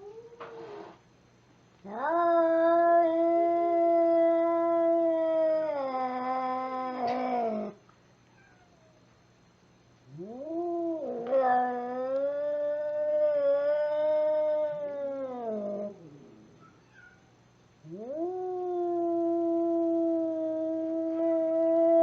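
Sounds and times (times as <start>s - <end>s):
cat hissing: 0.4s - 1.0s
cat yowling: 1.9s - 7.8s, 10.2s - 16.0s, 16.6s - 17.3s.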